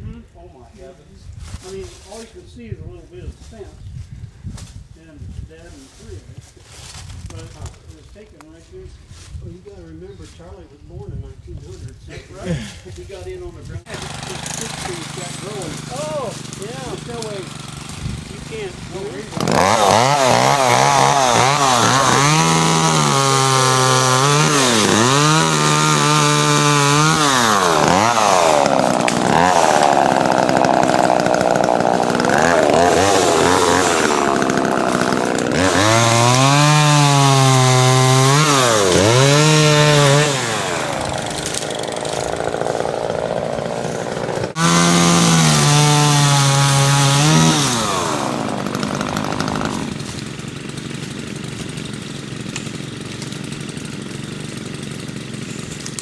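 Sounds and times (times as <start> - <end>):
chainsaw cutting wood: 13.8 - 56.0.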